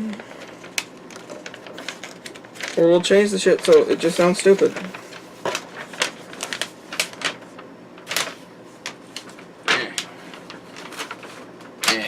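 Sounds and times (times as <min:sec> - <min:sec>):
packaging rustling: 0:00.2 - 0:12.0.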